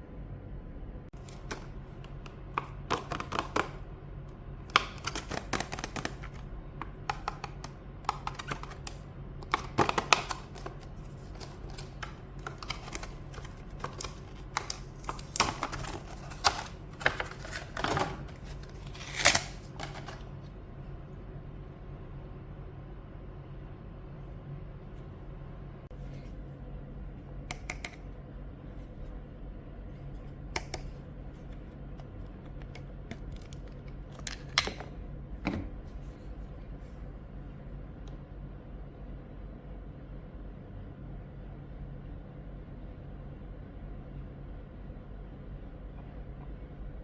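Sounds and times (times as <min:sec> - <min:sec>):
steady low hum: 0:00.0 - 0:47.0
mechanical keyboard clicks: 0:04.7 - 0:10.7.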